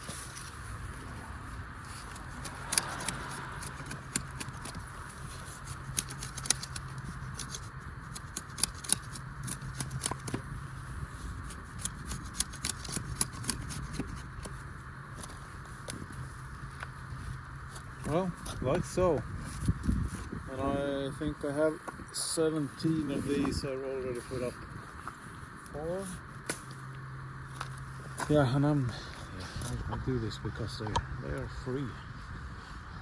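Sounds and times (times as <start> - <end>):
steady low hum: 0.0 - 33.0
hand tool clicking and snipping: 2.1 - 4.9, 5.7 - 10.4, 11.6 - 14.6.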